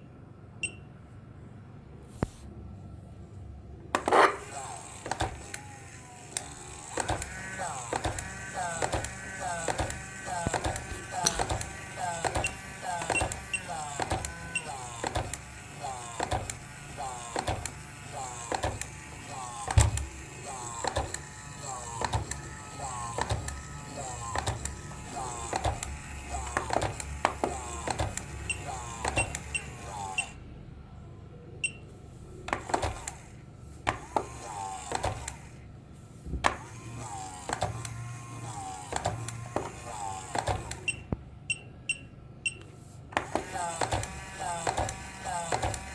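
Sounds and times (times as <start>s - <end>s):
electric toy clicking: 4.0s - 30.4s, 33.9s - 35.6s, 36.5s - 41.0s, 43.2s - 45.9s.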